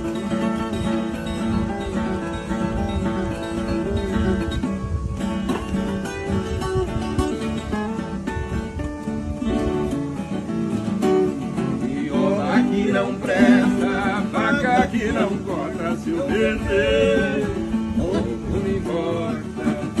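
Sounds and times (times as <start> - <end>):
plucked guitar strings: 0.0 - 20.0
man singing: 11.5 - 20.0.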